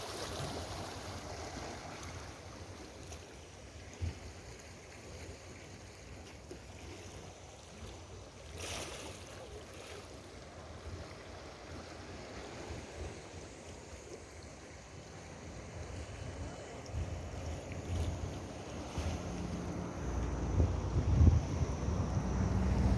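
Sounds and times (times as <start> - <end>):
wind buffeting microphone: 16.4 - 22.9.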